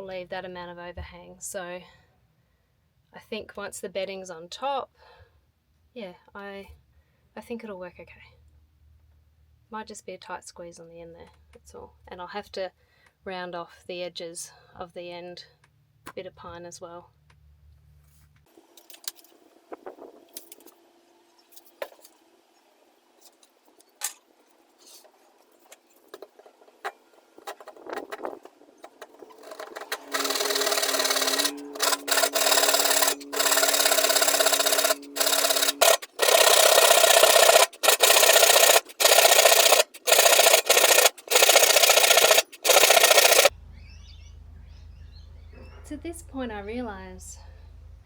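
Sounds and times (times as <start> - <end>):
hand saw cutting wood: 27.4 - 43.5.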